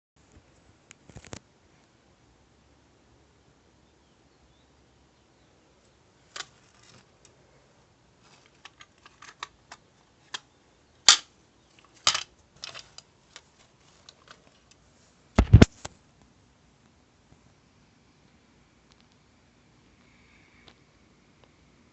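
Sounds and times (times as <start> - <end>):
hard objects clicking and knocking: 8.3 - 10.5, 11.1 - 14.8.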